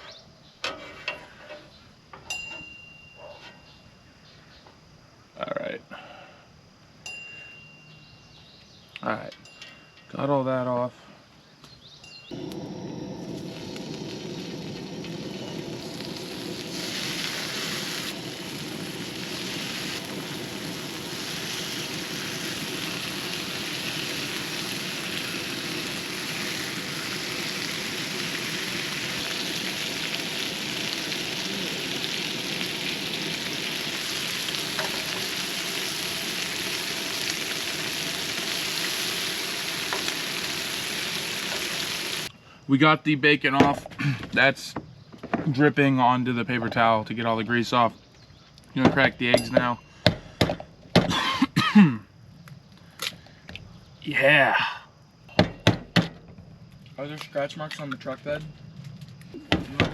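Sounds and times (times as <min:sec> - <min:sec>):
bacon sizzling on a grill: 0:12.3 - 0:42.3.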